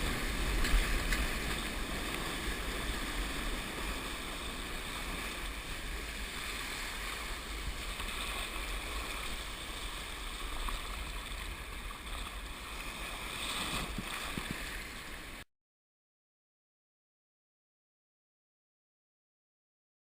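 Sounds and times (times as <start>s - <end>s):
sea water and surf rushing: 0.0s - 15.4s.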